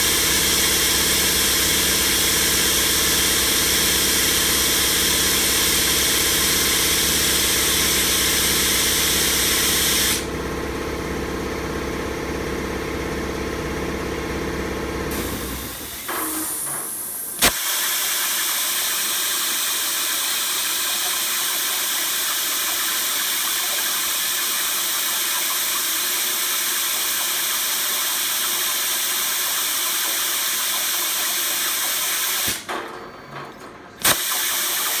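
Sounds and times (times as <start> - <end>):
plasma cutter torch hissing: 0.0 - 10.3, 15.1 - 32.7, 34.0 - 35.0
low motor hum: 8.1 - 16.0.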